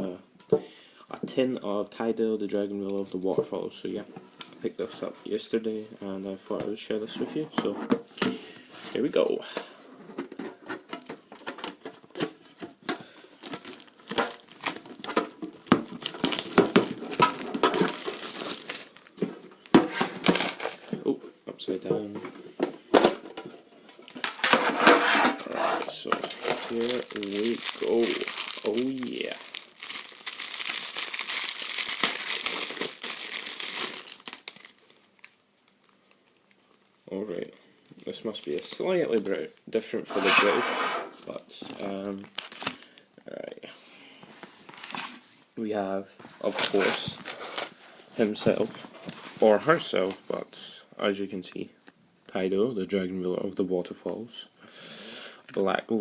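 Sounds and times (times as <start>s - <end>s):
plastic wrap tearing and crinkling: 13.4s - 19.2s, 24.0s - 39.8s, 41.2s - 43.0s.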